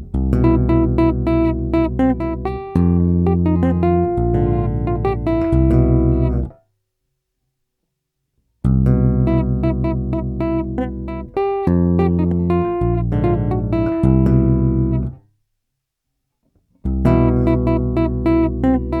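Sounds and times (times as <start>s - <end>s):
tapped electric bass notes: 0.0s - 6.5s, 8.7s - 15.2s, 16.9s - 19.0s.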